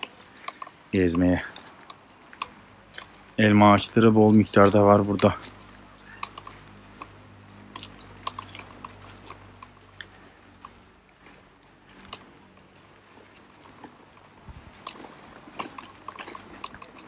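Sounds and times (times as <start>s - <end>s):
footsteps crunching on ground: 0.0s - 9.5s.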